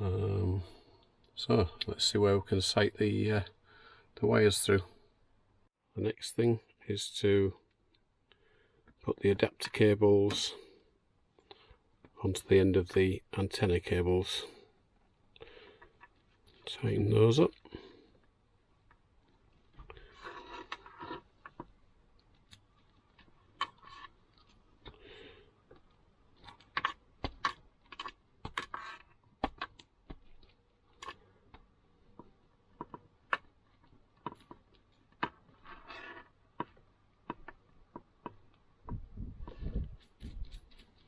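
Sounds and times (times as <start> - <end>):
scraping rustles of connectors: 39.1 - 41.0.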